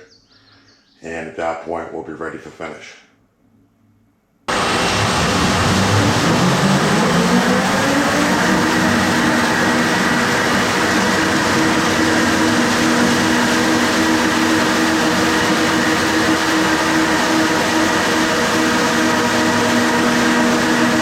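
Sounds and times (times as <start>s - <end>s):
floor sander droning: 4.5s - 21.0s
grinding noise: 4.5s - 21.0s.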